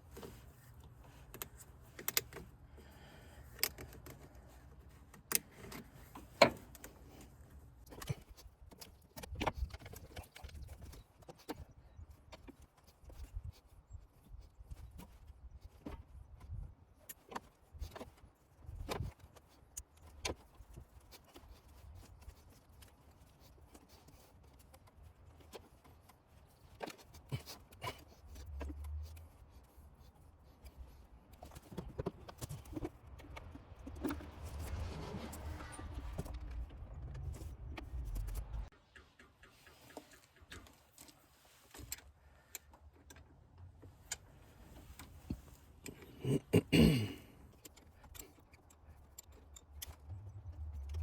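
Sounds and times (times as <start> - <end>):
low rumble of handling: 28.2 - 42.0, 48.8 - 51.0.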